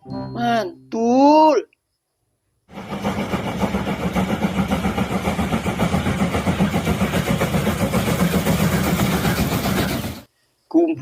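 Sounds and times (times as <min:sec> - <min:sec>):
engine running steadily: 0:02.7 - 0:10.3.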